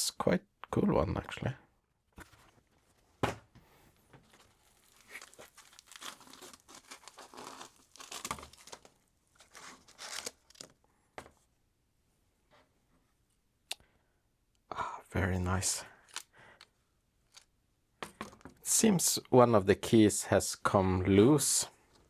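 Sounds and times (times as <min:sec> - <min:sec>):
packaging crinkling and rustling: 0:04.2 - 0:10.8.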